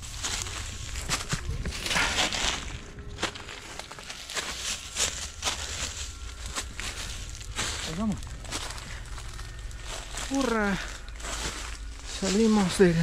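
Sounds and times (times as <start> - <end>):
twigs crackling and snapping: 0.0 - 12.9
footsteps crunching through undergrowth: 0.0 - 13.0
leaves rustling: 0.0 - 13.0.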